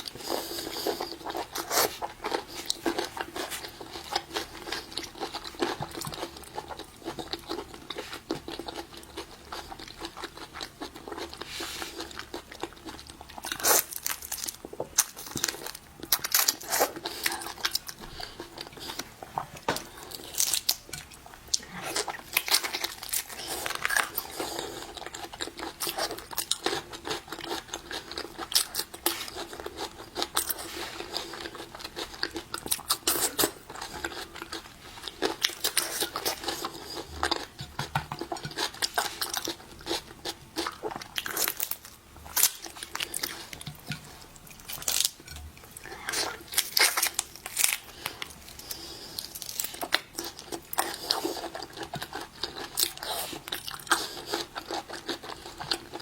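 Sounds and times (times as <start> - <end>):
crunching and chewing seafood: 0.0 - 56.0
sharp cracks and crinkles: 46.5 - 48.4.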